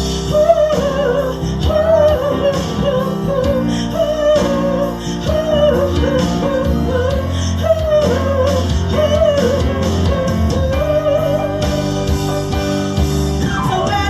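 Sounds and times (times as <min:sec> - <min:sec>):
live band playing rock ballad: 0:00.0 - 0:14.0.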